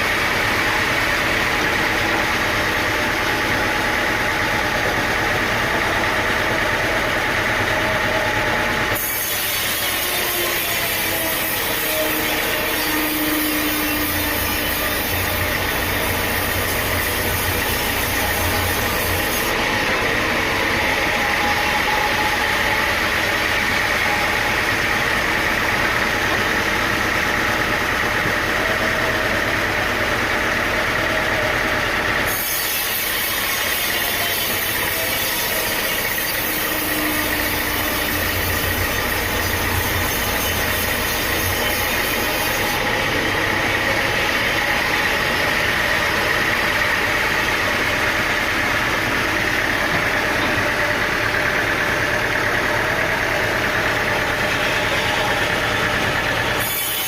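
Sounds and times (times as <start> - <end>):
sawmill machinery running: 0.0 - 57.0.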